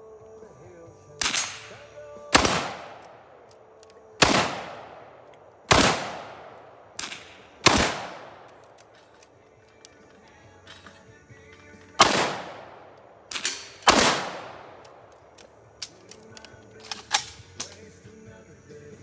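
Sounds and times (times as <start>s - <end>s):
gunshots with echoing tail: 1.2s - 3.5s, 4.2s - 9.0s, 12.0s - 15.1s.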